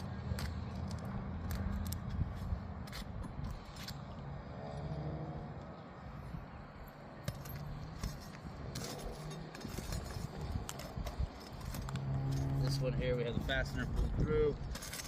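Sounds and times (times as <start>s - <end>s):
metal tool clinking and scraping: 7.2s - 15.0s.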